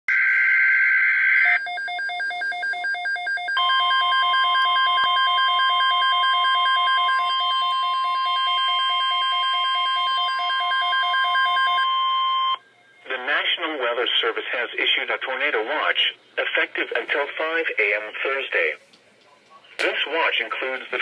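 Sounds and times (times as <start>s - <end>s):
steady warning alarm tone: 0.1s - 13.1s.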